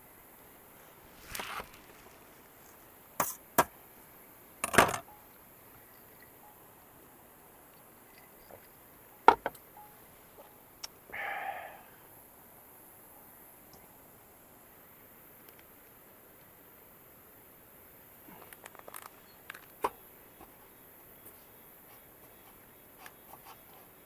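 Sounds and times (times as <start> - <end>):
rustling: 0.6 - 3.4.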